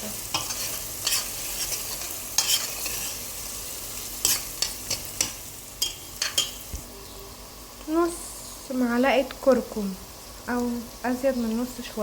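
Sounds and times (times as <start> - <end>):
onion frying in oil: 0.0 - 12.0
utensil scraping a pot: 0.3 - 3.4, 4.2 - 6.6.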